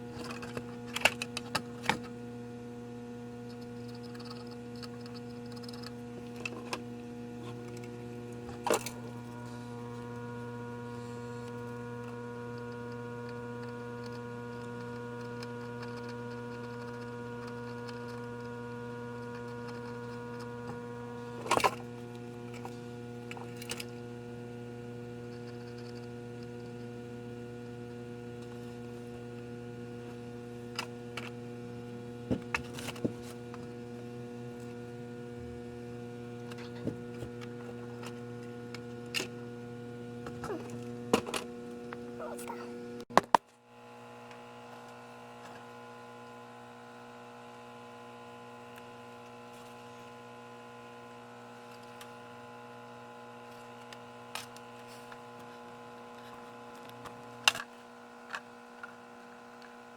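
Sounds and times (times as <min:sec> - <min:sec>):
electrical hum: 0:00.0 - 0:43.2.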